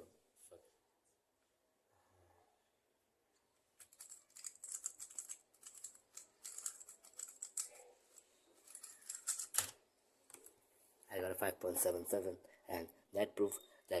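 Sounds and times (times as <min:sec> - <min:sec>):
plastic puzzle cube clicking: 0:03.8 - 0:07.8, 0:08.6 - 0:10.4.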